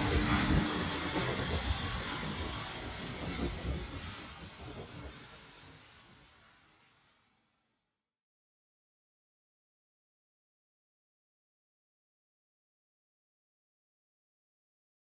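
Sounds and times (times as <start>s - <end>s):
pressure washer spray hissing: 0.0s - 7.3s.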